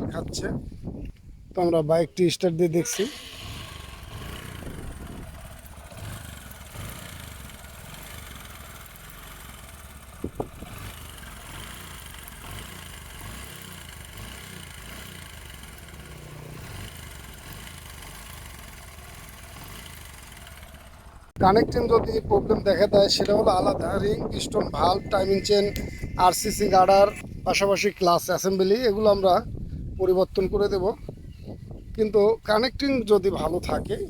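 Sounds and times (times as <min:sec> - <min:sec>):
motorcycle engine idling: 0:02.9 - 0:27.2.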